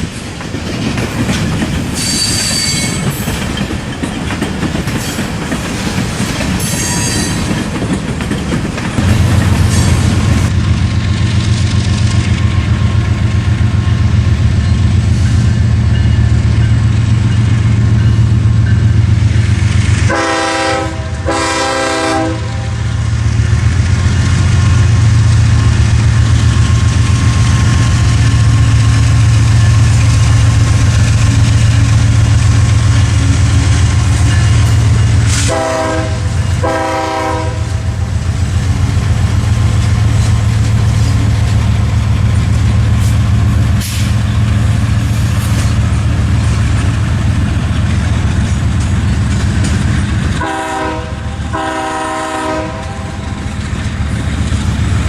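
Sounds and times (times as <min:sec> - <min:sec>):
diesel locomotive rumbling: 0:00.0 - 0:55.0
train air horn blasts: 0:20.0 - 0:23.0, 0:35.2 - 0:38.1, 0:50.4 - 0:53.3.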